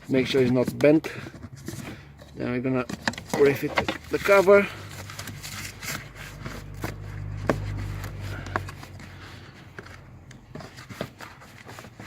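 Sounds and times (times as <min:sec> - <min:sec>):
light knocks and rubbing: 0:00.0 - 0:12.0.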